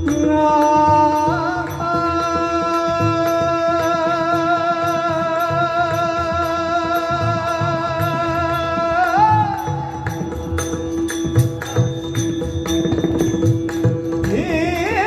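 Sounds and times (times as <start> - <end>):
hand drum strokes: 10.1 - 15.0
person singing: 14.2 - 15.0.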